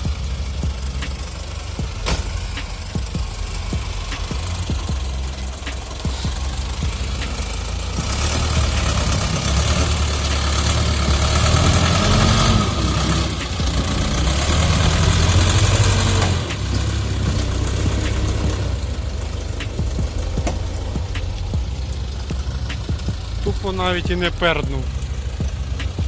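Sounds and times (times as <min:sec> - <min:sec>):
tractor diesel engine running: 0:00.0 - 0:26.0.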